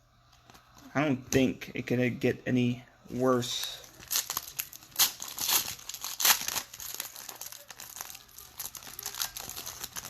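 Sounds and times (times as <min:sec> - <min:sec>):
cards rustling: 0:03.2 - 0:10.0
wrapper crinkling and tearing: 0:03.6 - 0:10.0.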